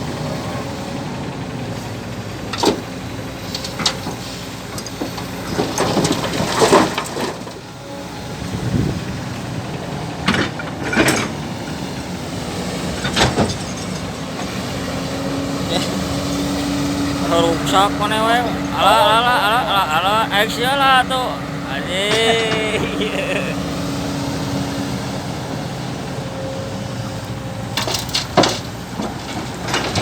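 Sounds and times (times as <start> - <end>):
excavator engine drone: 15.7 - 24.0.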